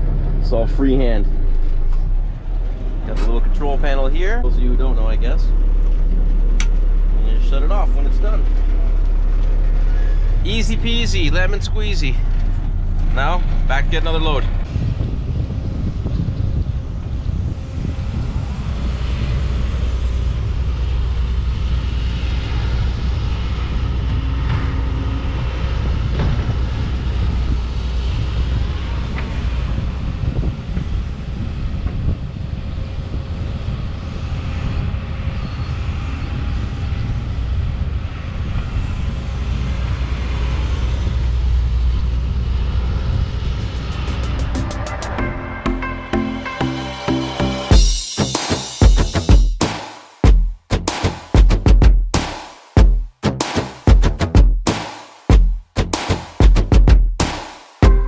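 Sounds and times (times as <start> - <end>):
diesel truck engine rumbling: 0.0 - 33.8.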